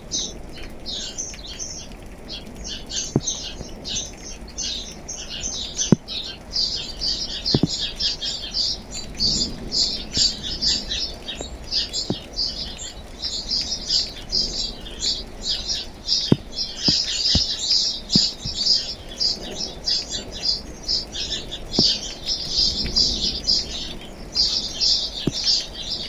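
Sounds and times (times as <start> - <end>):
rain hiss: 0.0 - 26.0
small birds chirping: 0.0 - 26.0
sharp taps: 3.0 - 4.4, 5.7 - 8.2, 10.2 - 12.5, 16.1 - 19.0, 21.7 - 22.2, 25.2 - 25.7.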